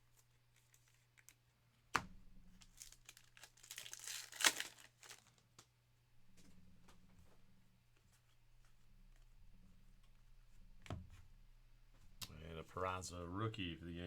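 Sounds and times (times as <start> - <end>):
wrapper snapping: 2.5 - 5.7
wrapper crackling and tearing: 2.6 - 5.4.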